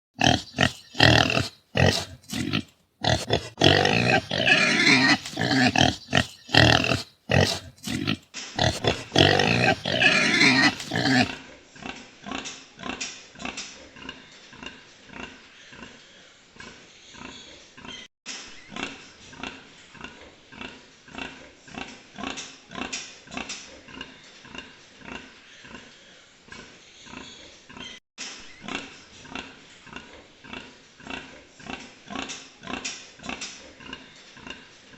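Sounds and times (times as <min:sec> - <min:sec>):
pigs squealing: 0:00.2 - 0:11.4
pig grunting: 0:00.2 - 0:16.0.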